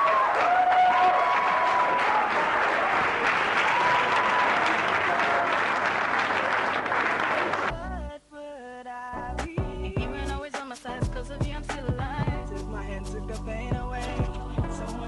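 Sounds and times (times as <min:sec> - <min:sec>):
audience applauding: 0:00.0 - 0:07.7
music with a deep beat: 0:11.0 - 0:15.0.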